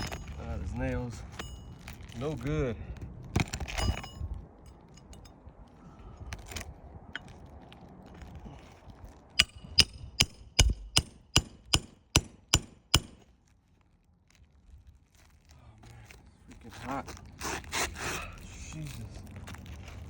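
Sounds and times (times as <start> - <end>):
hammer striking nail: 9.4 - 13.2.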